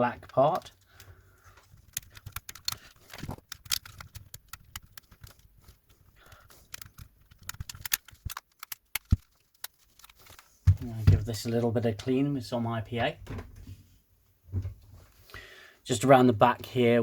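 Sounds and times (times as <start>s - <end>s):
plastic controller parts clicking: 1.7s - 10.5s.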